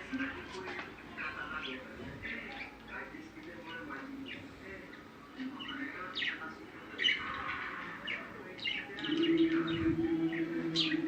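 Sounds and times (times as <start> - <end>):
small birds chirping: 0.9 - 11.0
steady low hum: 9.0 - 11.0.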